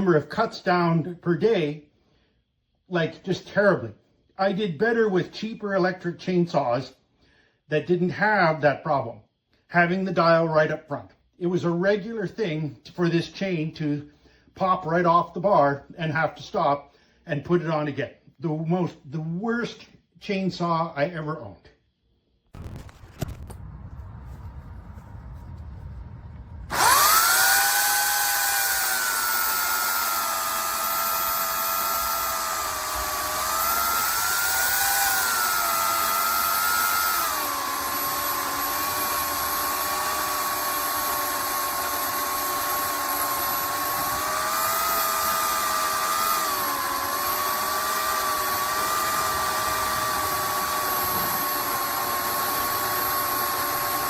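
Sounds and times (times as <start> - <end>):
electric chainsaw motor whining: 25.2 - 54.0.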